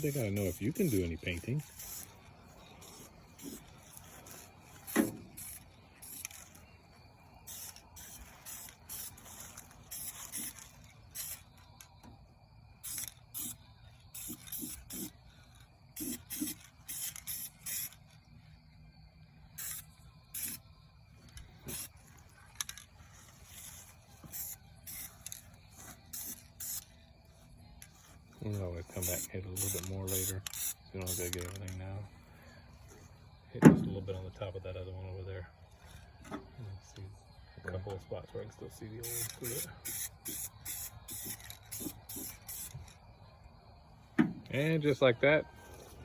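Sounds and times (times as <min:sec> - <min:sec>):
spray paint can hissing: 0:00.0 - 0:06.7, 0:07.4 - 0:11.6, 0:12.8 - 0:15.2, 0:16.0 - 0:18.1, 0:19.6 - 0:20.7, 0:21.6 - 0:26.9, 0:28.9 - 0:31.6, 0:39.0 - 0:42.9.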